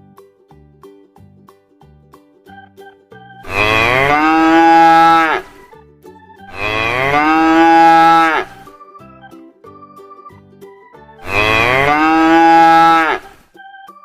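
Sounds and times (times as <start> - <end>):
cow mooing: 3.5 - 5.6, 6.5 - 8.6, 11.2 - 13.4.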